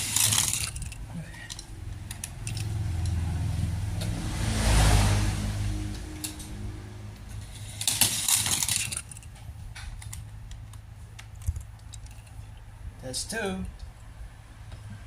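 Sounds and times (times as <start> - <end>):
toy car clattering on plastic track: 0.0 - 2.6, 7.4 - 10.2
metallic rattling: 0.0 - 3.3, 7.3 - 10.3.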